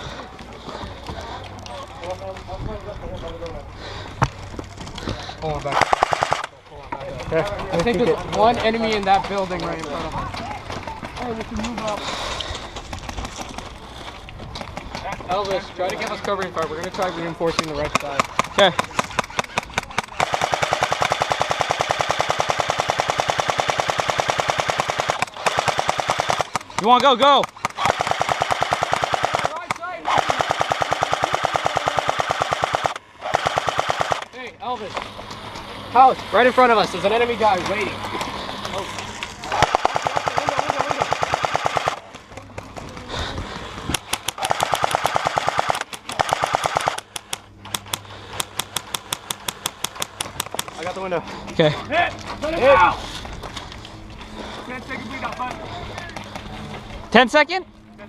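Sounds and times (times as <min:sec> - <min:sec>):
airsoft gun full-auto burst: 0:05.7 - 0:06.5, 0:18.0 - 0:34.4, 0:39.5 - 0:42.1, 0:43.9 - 0:47.4.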